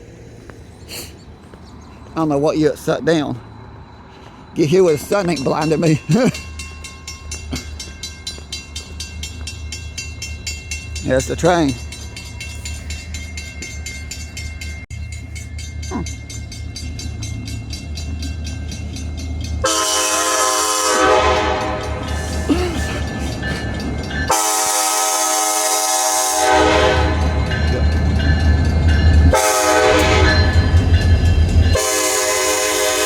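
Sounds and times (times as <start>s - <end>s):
locomotive engine rumble: 0.0s - 33.0s
train air horn blasts: 19.6s - 22.5s, 24.3s - 27.5s, 29.3s - 30.7s, 31.8s - 33.0s.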